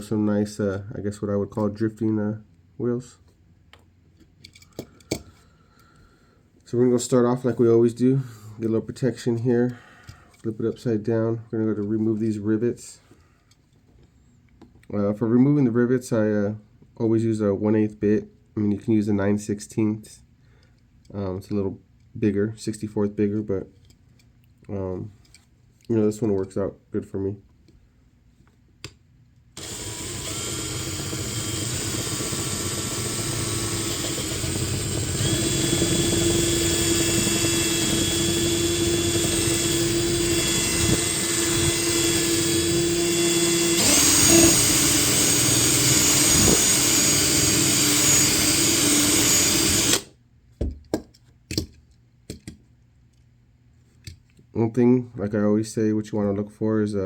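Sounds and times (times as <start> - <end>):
electric drill motor whine: 29.6 - 50.1.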